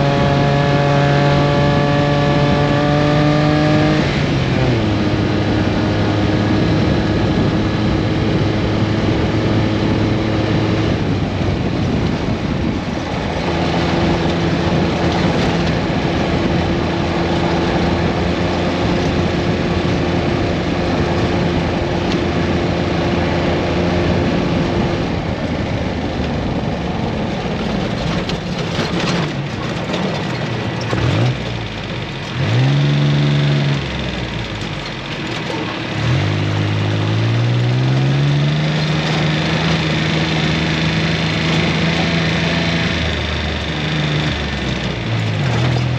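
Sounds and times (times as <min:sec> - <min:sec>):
steady rushing noise: 0:00.0 - 0:45.9
vehicle engine running: 0:00.0 - 0:45.9.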